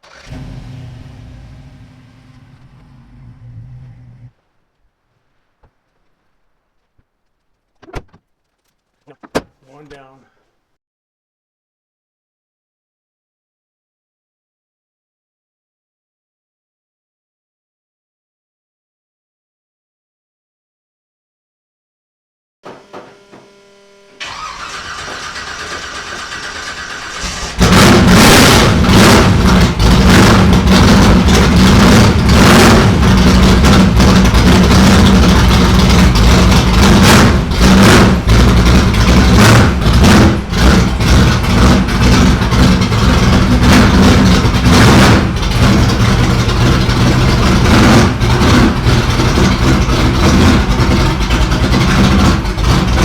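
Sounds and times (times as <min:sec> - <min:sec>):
car engine running: 0:00.0 - 0:10.2, 0:23.2 - 0:53.0
car starter cranking: 0:00.0 - 0:10.2, 0:24.2 - 0:53.0.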